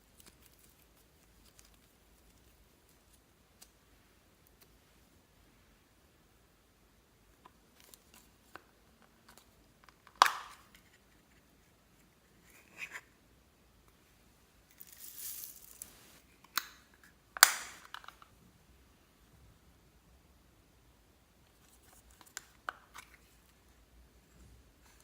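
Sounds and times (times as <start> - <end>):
rustling hiss: 14.8 - 16.3.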